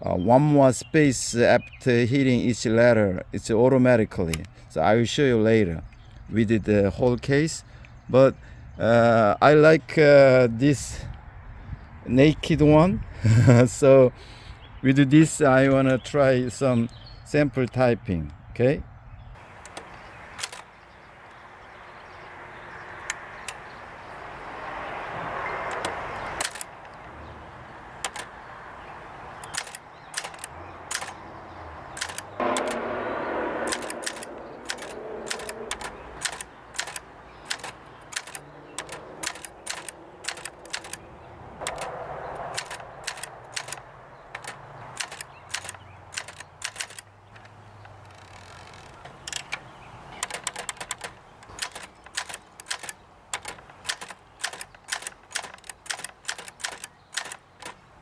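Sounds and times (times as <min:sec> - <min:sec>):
typewriter keystrokes clacking: 0:19.6 - 0:20.6, 0:25.6 - 0:27.0, 0:28.0 - 0:28.3, 0:29.4 - 0:31.2, 0:31.9 - 0:33.0, 0:33.6 - 0:41.0, 0:41.6 - 0:57.8
typewriter rasping: 0:19.7 - 0:20.6, 0:25.6 - 0:26.8, 0:28.0 - 0:28.3, 0:29.3 - 0:31.2, 0:31.9 - 0:33.0, 0:33.6 - 0:41.0, 0:41.6 - 0:57.8.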